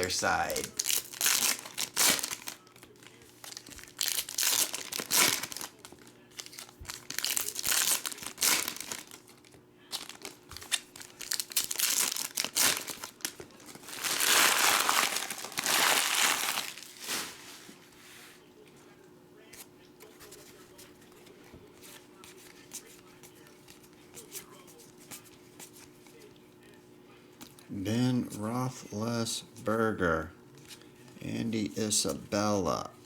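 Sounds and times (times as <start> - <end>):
foil wrappers crinkling: 0.0 - 17.9.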